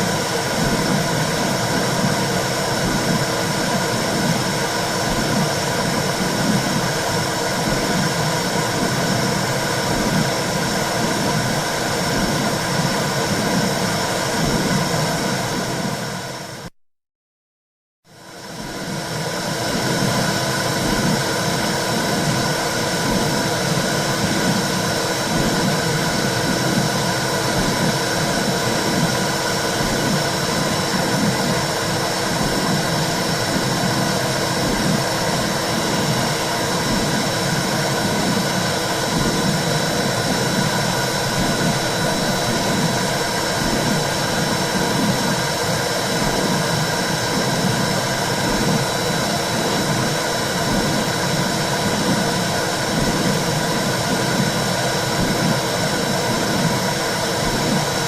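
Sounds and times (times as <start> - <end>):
heartbeat-like low pulse: 20.8 - 57.9.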